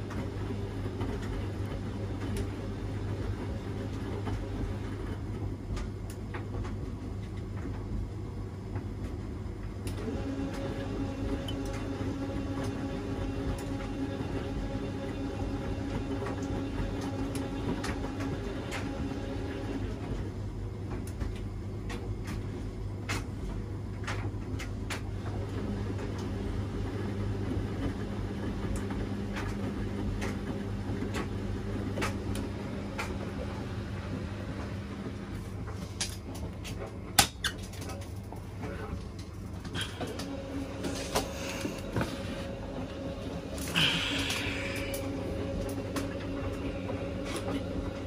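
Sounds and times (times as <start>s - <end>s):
washing machine motor hum: 0.0s - 48.0s.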